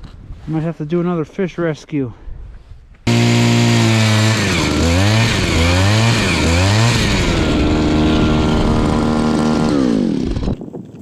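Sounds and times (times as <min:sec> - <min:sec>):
ice auger engine revving: 0:03.1 - 0:10.6.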